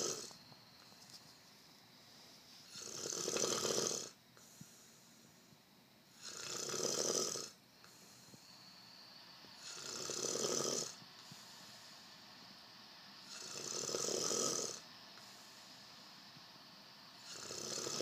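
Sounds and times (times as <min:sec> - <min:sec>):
person snoring: 0:00.0 - 0:00.4, 0:02.7 - 0:05.4, 0:06.1 - 0:08.4, 0:09.6 - 0:12.0, 0:13.2 - 0:15.8, 0:17.2 - 0:18.0.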